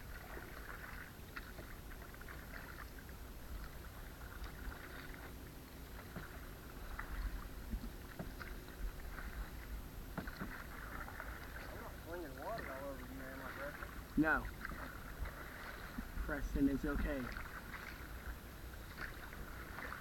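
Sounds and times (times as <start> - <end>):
canoe paddles splashing in water: 0.0 - 20.0
low steady rumble: 0.0 - 20.0
light knocks of paddles: 6.0 - 9.4, 10.1 - 11.8.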